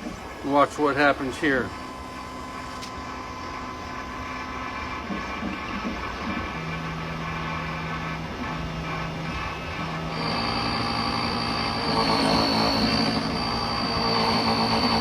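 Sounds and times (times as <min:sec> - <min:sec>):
low motor tone: 0:06.6 - 0:15.0
key-cutting machine motor hum: 0:06.9 - 0:15.0.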